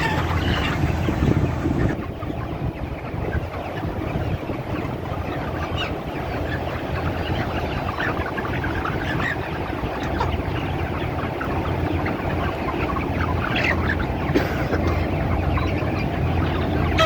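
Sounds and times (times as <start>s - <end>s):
constant low hum: 0.0s - 17.0s
flock of chickens calling: 0.0s - 17.0s.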